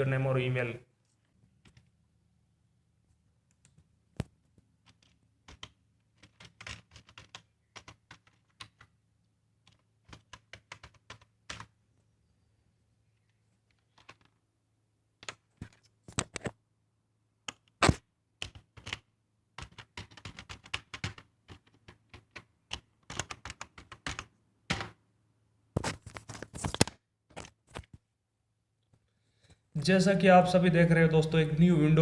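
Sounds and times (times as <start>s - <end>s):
keyboard typing: 1.5s - 1.9s, 3.5s - 9.0s, 9.6s - 11.8s, 13.2s - 14.4s, 15.2s - 16.5s, 17.5s - 25.0s.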